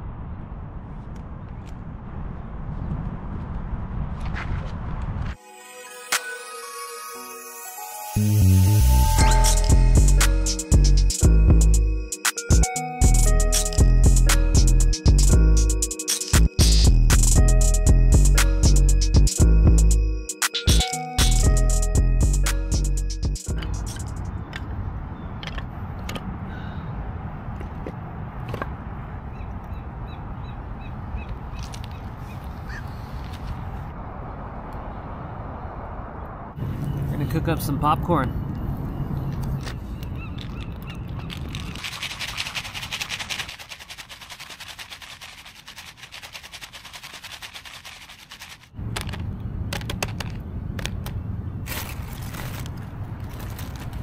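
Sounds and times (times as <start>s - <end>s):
bird calling: 29.3s - 33.2s, 39.6s - 41.8s.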